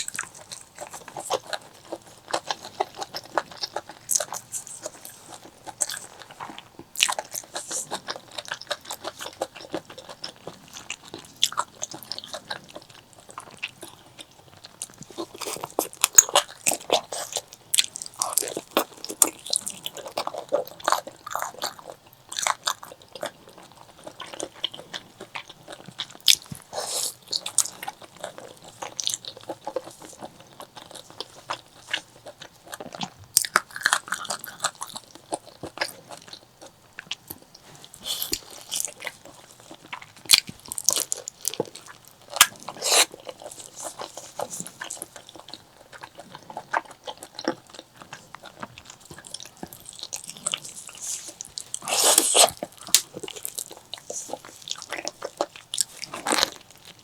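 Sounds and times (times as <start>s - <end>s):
person chewing: 0.0s - 57.0s
crunchy bites: 37.2s - 56.9s.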